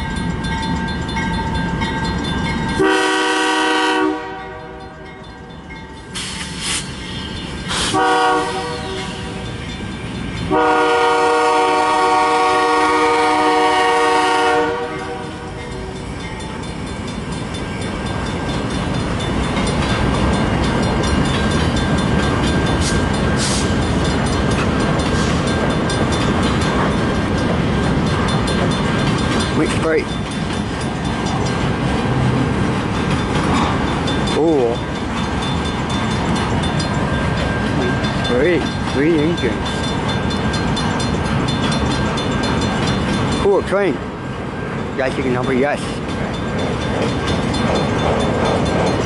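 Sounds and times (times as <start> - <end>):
train rumbling past: 0.0 - 49.0
locomotive horn blasts: 2.8 - 5.0, 7.8 - 9.4, 10.5 - 15.5
freight cars rattling: 5.5 - 49.0.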